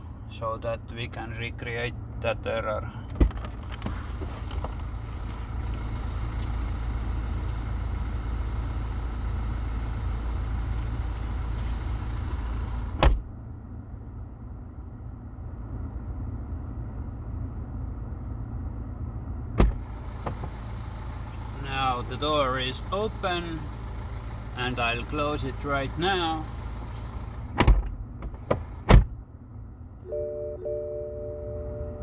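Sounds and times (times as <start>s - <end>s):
diesel engine idling: 0.0s - 32.0s
car door thumps: 3.1s - 3.6s, 13.0s - 13.3s, 19.6s - 20.6s, 27.6s - 29.2s.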